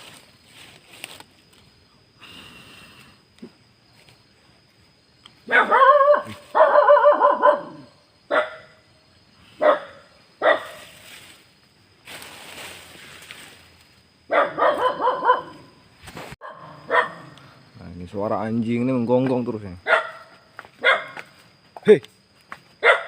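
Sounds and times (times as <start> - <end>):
dog barking: 5.5 - 8.8, 9.6 - 10.8, 14.3 - 15.7, 16.4 - 17.4, 19.8 - 21.2, 22.8 - 23.0.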